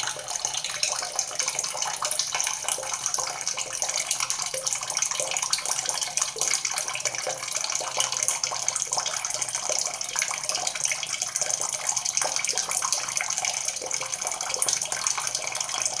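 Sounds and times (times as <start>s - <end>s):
water pouring and splashing: 0.0s - 16.0s.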